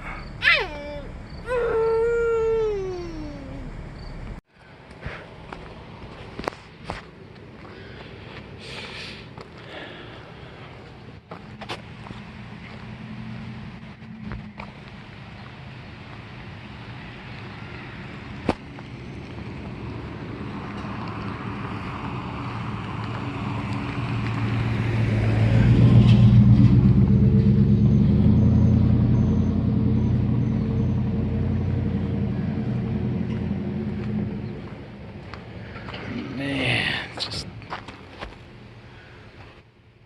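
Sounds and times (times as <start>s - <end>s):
vehicle driving past: 16.8s - 37.0s.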